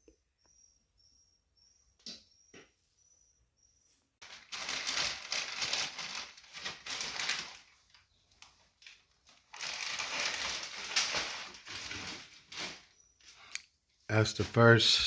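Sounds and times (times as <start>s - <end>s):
rustling and crinkling handling noise: 4.2s - 13.5s.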